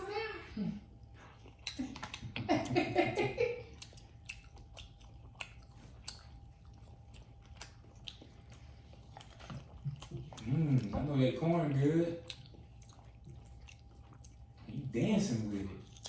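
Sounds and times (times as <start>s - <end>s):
wet chewing mouth clicks: 1.0s - 2.8s, 3.5s - 14.7s.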